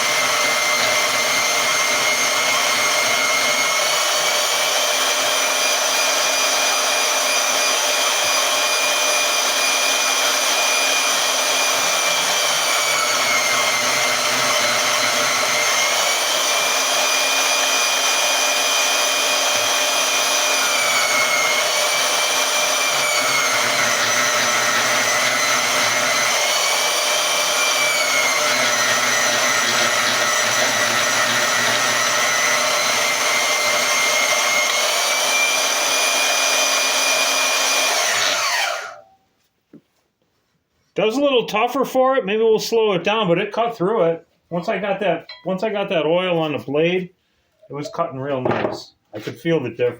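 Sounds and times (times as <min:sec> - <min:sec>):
band saw cutting metal: 0:00.0 - 0:39.1.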